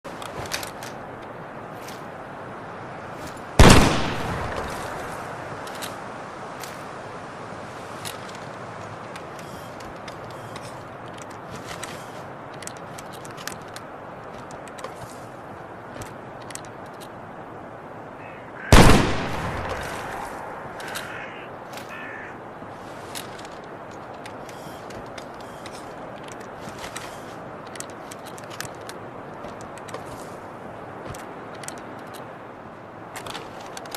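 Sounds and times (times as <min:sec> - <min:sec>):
steady background hiss: 0:00.1 - 0:33.9
musket shot: 0:03.6 - 0:04.7, 0:18.7 - 0:20.2.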